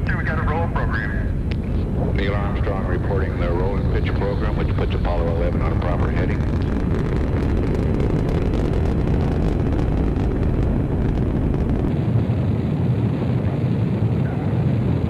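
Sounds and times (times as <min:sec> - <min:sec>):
rocket engines roaring: 0:00.0 - 0:15.0.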